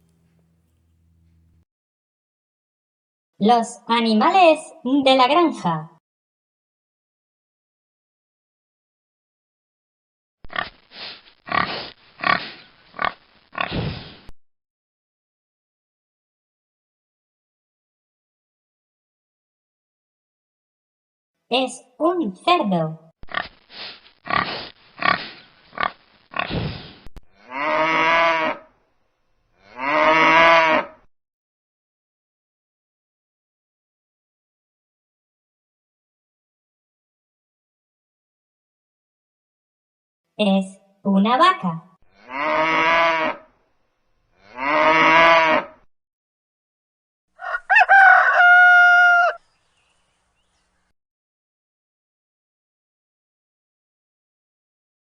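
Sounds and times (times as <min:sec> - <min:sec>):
pig grunting: 0:11.5 - 0:13.9, 0:24.2 - 0:26.6
cow mooing: 0:27.4 - 0:28.6, 0:29.6 - 0:30.9, 0:42.1 - 0:43.4, 0:44.4 - 0:45.8
rooster crowing: 0:47.4 - 0:49.4.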